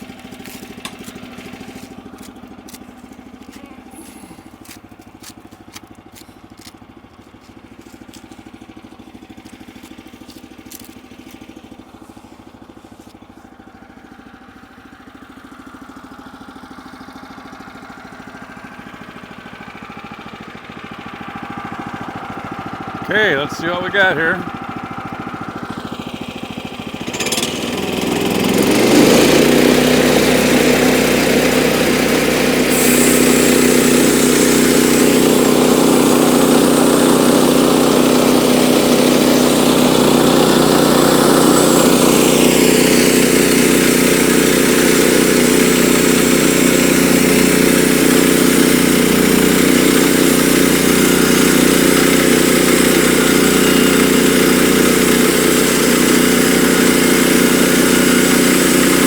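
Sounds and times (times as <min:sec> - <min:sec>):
band saw blade sawing log: 0:00.0 - 0:13.4, 0:23.1 - 0:24.5, 0:27.1 - 0:59.0
small gasoline engine running: 0:00.0 - 0:59.0.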